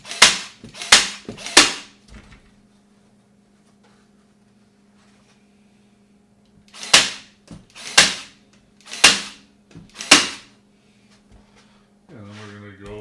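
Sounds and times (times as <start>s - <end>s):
staple gun firing: 10.0s - 10.5s.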